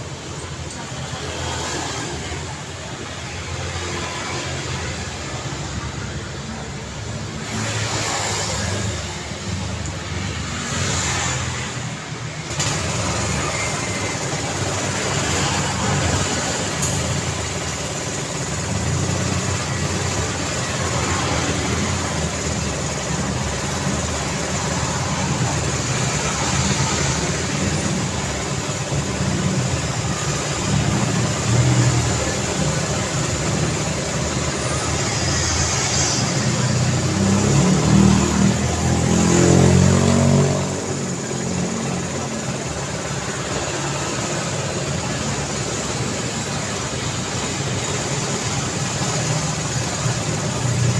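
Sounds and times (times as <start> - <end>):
passing vehicle engines: 0.0 - 50.9
vehicle accelerating past: 35.0 - 41.1.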